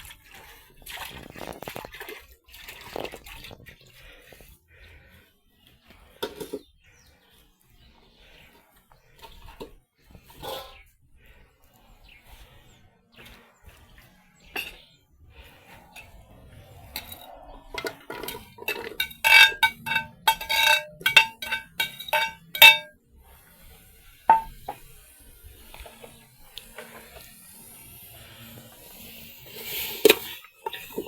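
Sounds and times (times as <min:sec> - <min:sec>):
utensil clinking on metal pot: 0:14.5 - 0:14.8, 0:15.9 - 0:16.2, 0:17.0 - 0:22.9, 0:24.3 - 0:24.8.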